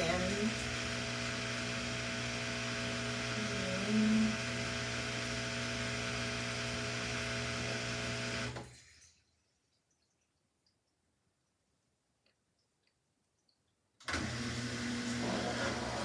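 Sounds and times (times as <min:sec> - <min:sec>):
washing machine spinning: 0:00.0 - 0:08.8, 0:14.1 - 0:16.0.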